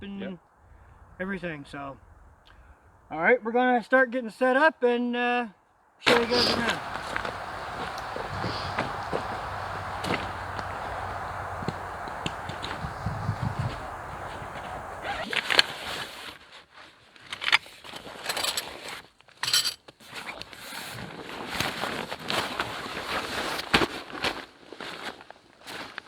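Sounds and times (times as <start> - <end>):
footsteps: 6.1 - 15.3
steady hiss: 6.1 - 15.3
rustling camping gear: 6.1 - 15.5.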